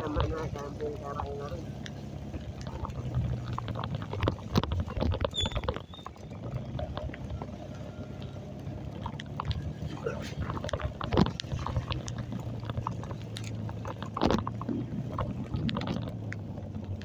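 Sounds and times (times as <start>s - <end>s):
motorcycle engine running: 0.0s - 17.0s
road noise: 0.0s - 17.0s
high squeak: 5.2s - 6.2s.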